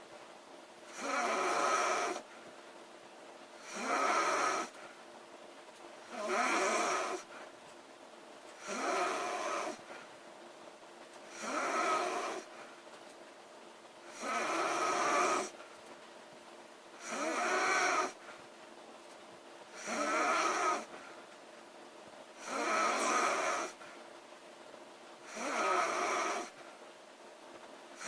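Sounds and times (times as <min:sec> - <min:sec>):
girl snoring: 0:00.9 - 0:02.3, 0:03.6 - 0:04.8, 0:06.1 - 0:07.3, 0:08.6 - 0:09.9, 0:11.3 - 0:12.6, 0:14.1 - 0:15.6, 0:17.0 - 0:18.2, 0:19.8 - 0:21.0, 0:22.4 - 0:23.8, 0:25.2 - 0:26.6.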